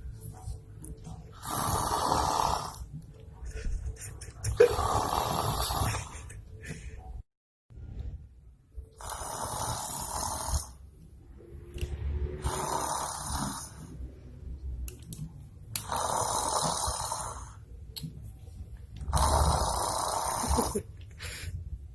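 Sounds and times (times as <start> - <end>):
person snoring: 1.3 - 2.9, 4.5 - 6.2, 9.0 - 10.8, 12.2 - 14.2, 15.8 - 17.7, 19.0 - 21.5.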